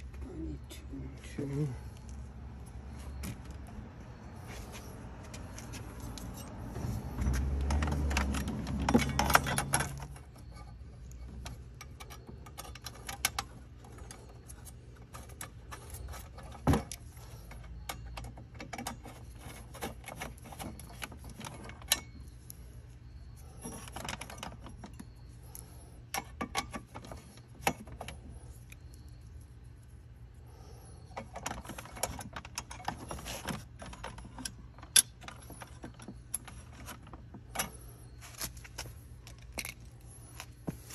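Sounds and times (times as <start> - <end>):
low rumble and clatter: 5.2 - 17.5.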